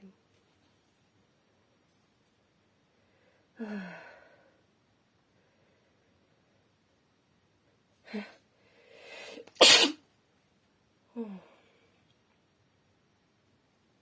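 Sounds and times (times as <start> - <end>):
woman sneezing: 9.5 - 10.0.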